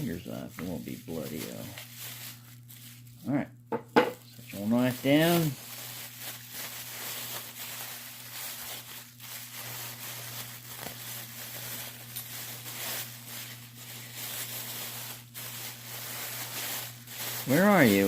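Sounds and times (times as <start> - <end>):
packing material tearing and rustling: 0.0 - 3.4, 4.2 - 18.0.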